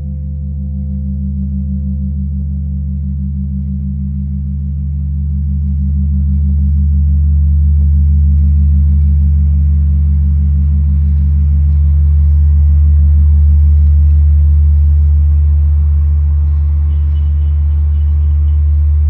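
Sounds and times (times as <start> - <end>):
large bell humming drone: 0.0 - 19.0.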